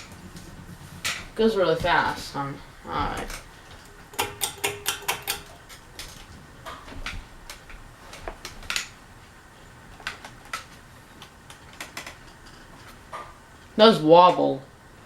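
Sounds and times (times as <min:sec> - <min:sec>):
ceiling fan running: 0:00.0 - 0:15.0.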